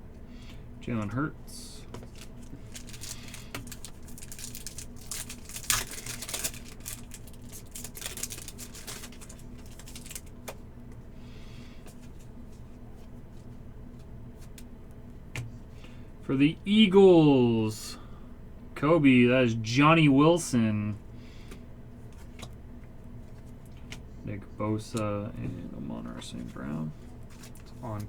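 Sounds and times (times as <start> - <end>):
trading cards clicking and rustling: 1.8 - 10.6, 24.8 - 28.0.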